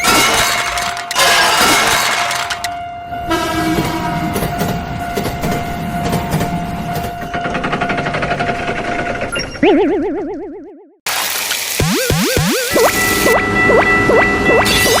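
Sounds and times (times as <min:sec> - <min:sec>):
cartoon train with horn tones: 0:00.0 - 0:08.3, 0:12.8 - 0:15.0.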